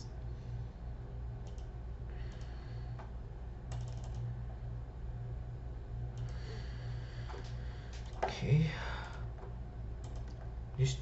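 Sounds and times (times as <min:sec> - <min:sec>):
low electrical hum: 0:00.0 - 0:11.0
computer keyboard keystrokes: 0:01.4 - 0:01.7, 0:03.7 - 0:04.3, 0:10.0 - 0:10.5.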